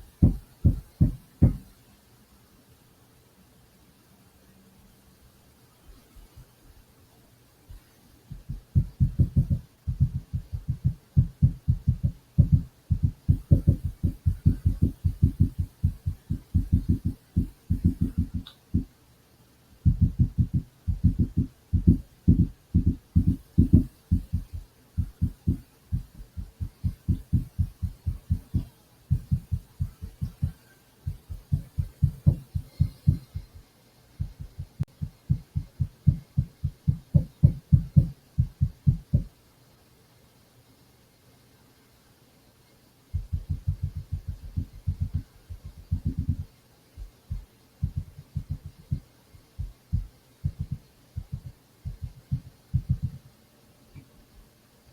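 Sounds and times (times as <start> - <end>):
dull low thumps: 8.3 - 18.9, 19.9 - 33.6, 34.2 - 39.3, 43.2 - 49.0, 49.6 - 53.2.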